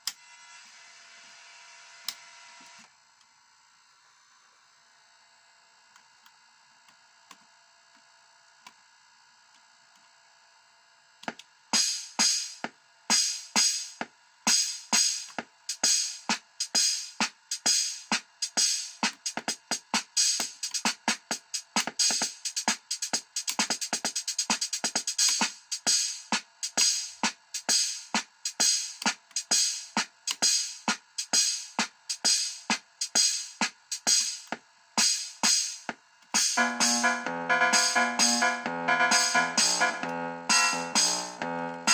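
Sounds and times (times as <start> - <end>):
faint electronic hum: 0.0 - 41.9
electronic drum beat: 11.3 - 41.9.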